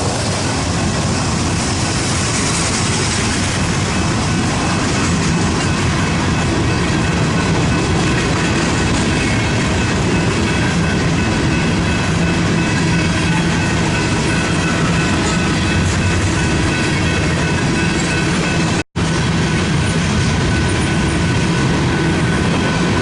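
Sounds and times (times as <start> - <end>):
freight train rumbling by: 0.0 - 23.0.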